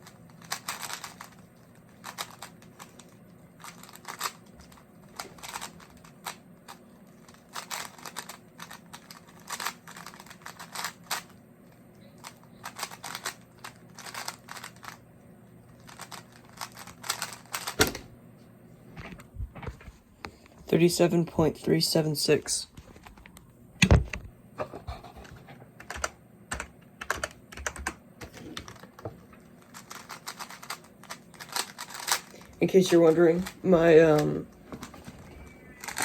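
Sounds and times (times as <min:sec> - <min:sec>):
plastic puzzle cube clicking: 0:00.4 - 0:01.4, 0:02.0 - 0:04.8, 0:07.3 - 0:11.3, 0:15.9 - 0:17.8.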